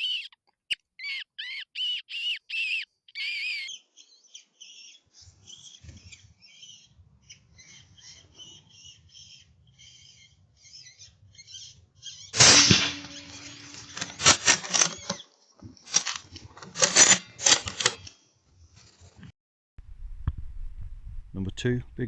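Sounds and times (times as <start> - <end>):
high prey call squeaks: 0.0 - 6.9
rifle shot: 12.4 - 14.6
clicking and handling noise: 12.4 - 15.2, 15.9 - 18.1.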